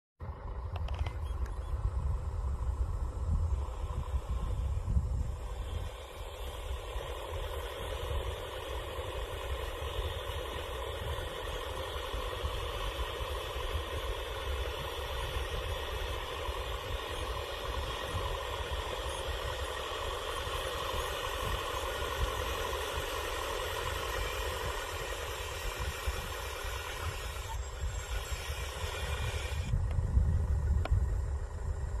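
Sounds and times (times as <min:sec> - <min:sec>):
model motor whine: 0:00.2 - 0:32.0
low rumble: 0:27.1 - 0:32.0.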